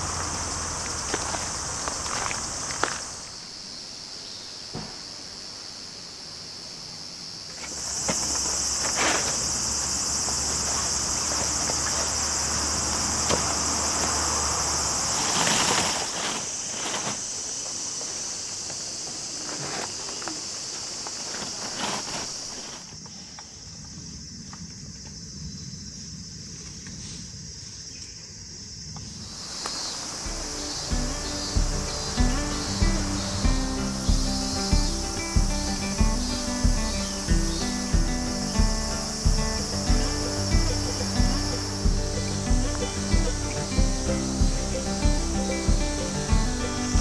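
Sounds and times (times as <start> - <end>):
insects chirring: 0.0 - 47.0
light knocks: 4.7 - 5.0.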